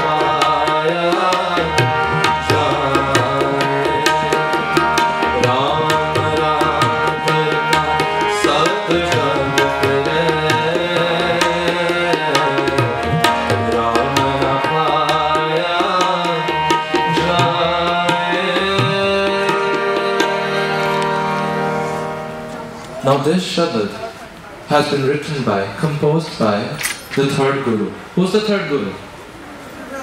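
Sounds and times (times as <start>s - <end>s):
tabla playing: 0.0s - 24.0s
held melodic notes: 0.0s - 24.4s.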